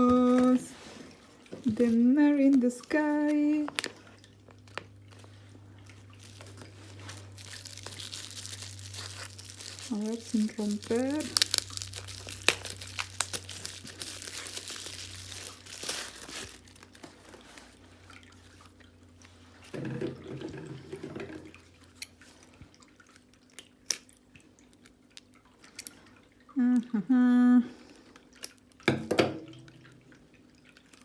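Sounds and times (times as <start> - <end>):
packaging crinkling: 0.0 - 18.8.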